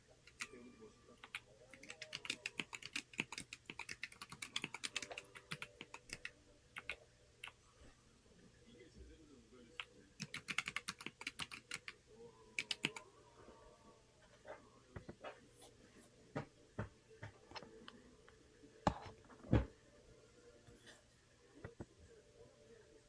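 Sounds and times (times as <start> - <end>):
typing on mechanical keyboard: 1.2 - 7.0, 10.2 - 11.9, 12.6 - 13.0.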